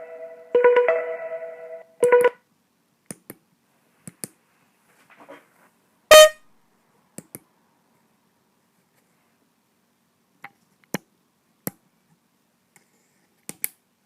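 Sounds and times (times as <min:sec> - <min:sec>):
electronic ringtone chord: 0:00.0 - 0:02.4
loud buzzy beep: 0:00.2 - 0:02.4, 0:06.1 - 0:06.4.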